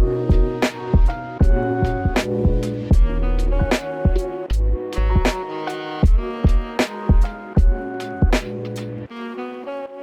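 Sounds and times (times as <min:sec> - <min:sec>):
kick drum: 0:00.0 - 0:04.4, 0:05.1 - 0:05.4, 0:06.0 - 0:08.5
background music: 0:00.0 - 0:09.8.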